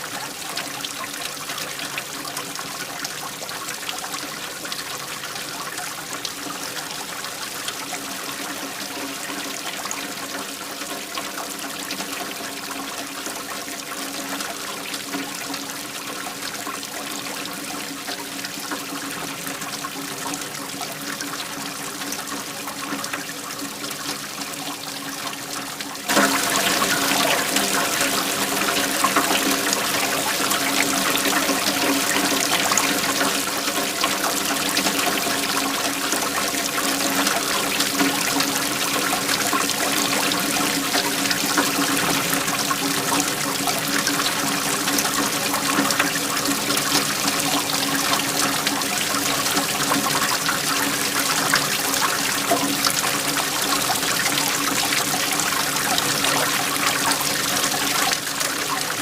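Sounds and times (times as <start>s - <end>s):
waterfall rushing: 26.1s - 59.0s.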